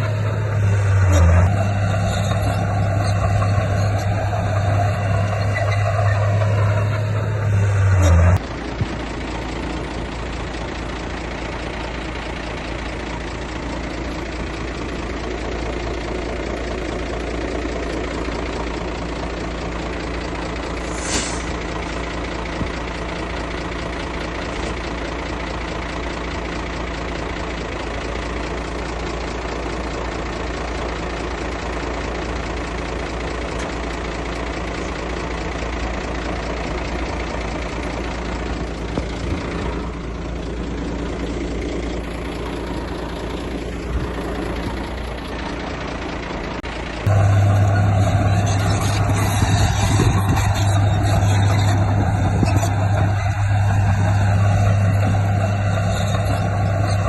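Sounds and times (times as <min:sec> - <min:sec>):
bulldozer diesel engine running: 0:00.0 - 0:57.0
short high squeal: 0:20.8 - 0:21.5.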